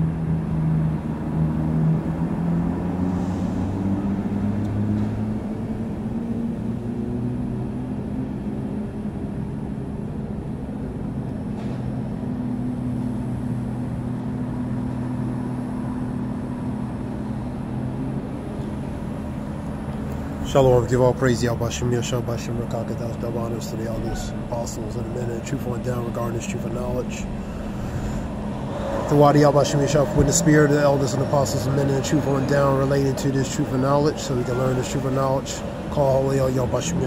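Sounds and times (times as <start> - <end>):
road noise: 0.0 - 37.0
vehicle engine humming: 0.0 - 37.0.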